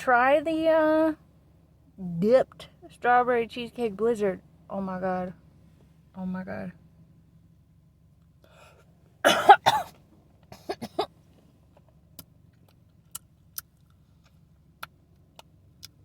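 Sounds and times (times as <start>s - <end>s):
man coughing: 9.2s - 9.9s, 10.5s - 11.1s.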